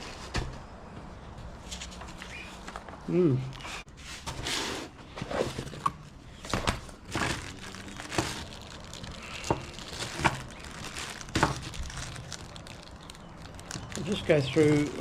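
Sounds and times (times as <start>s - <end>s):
plastic packaging crinkling: 5.6s - 15.0s.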